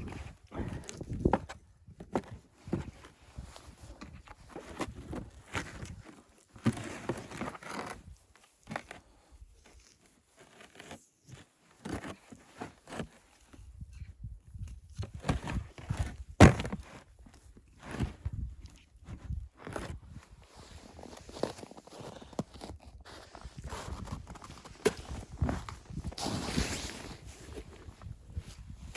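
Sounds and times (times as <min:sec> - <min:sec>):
rustling and handling things: 0:15.3 - 0:28.9
footsteps crunching in snow: 0:20.5 - 0:28.5.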